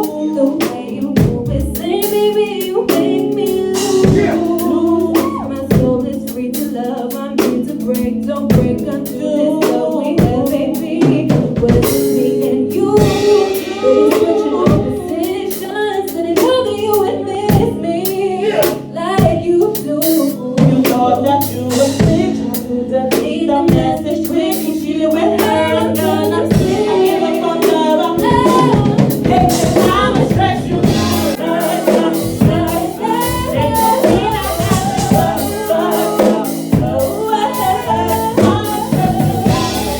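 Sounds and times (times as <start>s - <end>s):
person singing: 0.0s - 19.2s, 19.9s - 39.9s
drum beat of snare and kick: 0.6s - 6.7s, 25.4s - 39.9s.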